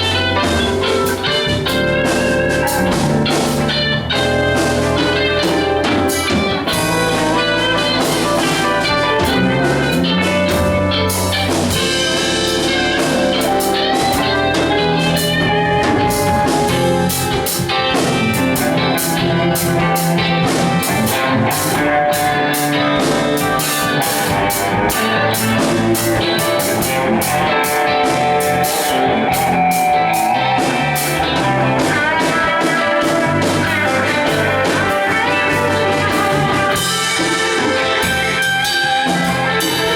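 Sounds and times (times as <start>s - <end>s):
bass guitar: 0.0s - 39.9s
drum kit beat: 0.0s - 39.9s
electric guitar leads: 0.0s - 39.9s
keyboard: 0.0s - 39.9s.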